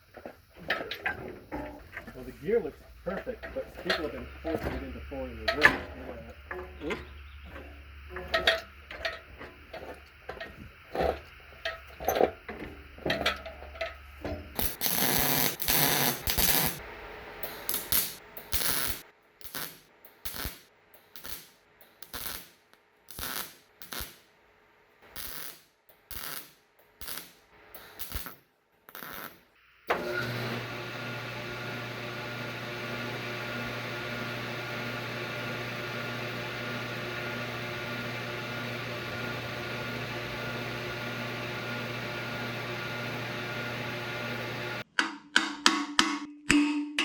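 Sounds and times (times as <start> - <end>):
metal parts clinking and clanking: 0.0 - 14.8
steady hum: 0.0 - 18.5.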